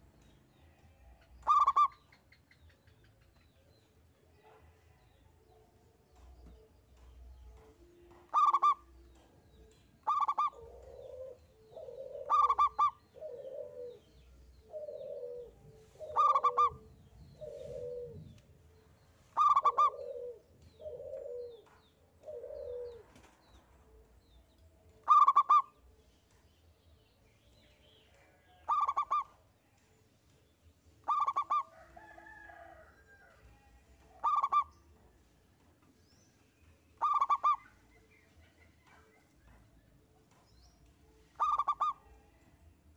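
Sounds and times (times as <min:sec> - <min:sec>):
dove cooing: 0:01.4 - 0:02.0, 0:08.3 - 0:08.9, 0:10.0 - 0:18.4, 0:19.4 - 0:23.1, 0:25.0 - 0:25.7, 0:28.7 - 0:29.3, 0:31.0 - 0:31.7, 0:34.1 - 0:34.7, 0:37.0 - 0:37.6, 0:41.4 - 0:42.1.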